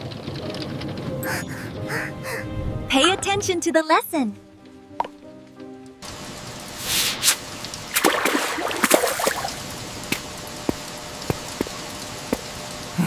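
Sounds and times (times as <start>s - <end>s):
rain falling: 0.0s - 2.4s, 6.0s - 13.0s
splashy bursts: 6.8s - 11.8s.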